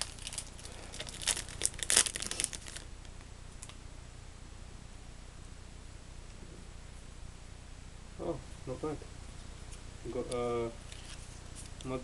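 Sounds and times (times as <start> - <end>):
foil wrapper crinkling and tearing: 0.0 - 2.9.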